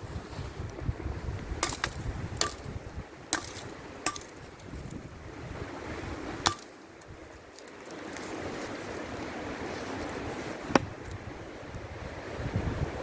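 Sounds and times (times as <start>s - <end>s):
wind rumble on microphone: 0.0s - 13.0s
sharp ringing knocks: 1.6s - 5.0s, 6.5s - 6.8s.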